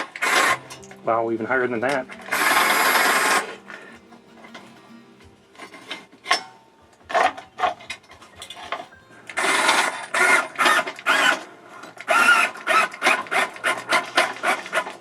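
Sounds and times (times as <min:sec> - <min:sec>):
jack cranking grinding strokes: 0:09.4 - 0:15.0.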